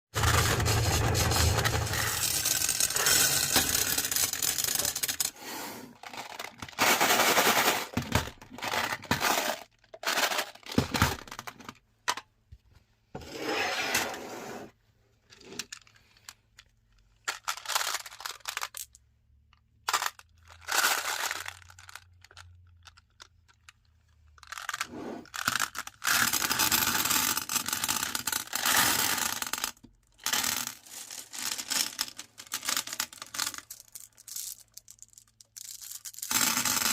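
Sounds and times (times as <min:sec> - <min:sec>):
marbles crushed in meat grinder: 0:00.2 - 0:05.3, 0:06.0 - 0:11.4, 0:24.4 - 0:36.9.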